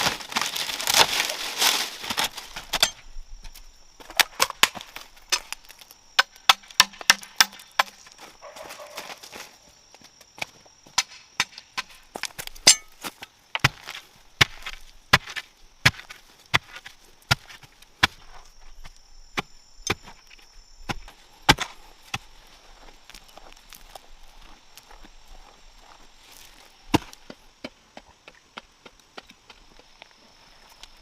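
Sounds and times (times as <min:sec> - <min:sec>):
chopping into wood: 0:06.2 - 0:08.0, 0:20.9 - 0:22.2, 0:26.9 - 0:27.2.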